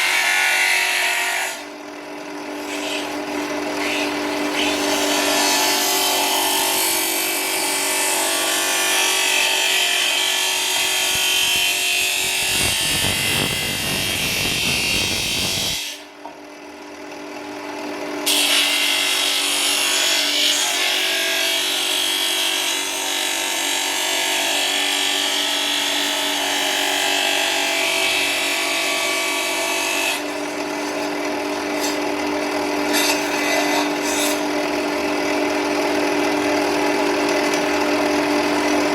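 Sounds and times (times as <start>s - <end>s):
electric sander sanding: 8.5s - 15.9s.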